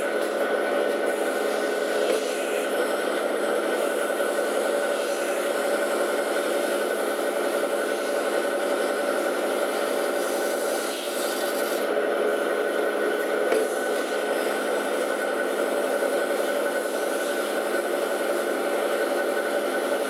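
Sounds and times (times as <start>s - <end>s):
metal spinning lathe running: 0.0s - 20.0s.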